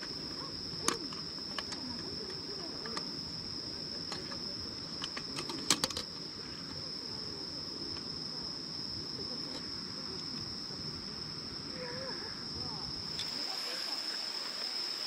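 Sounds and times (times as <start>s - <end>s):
insect trilling: 0.0s - 15.0s
shallow stream murmuring: 13.0s - 15.0s.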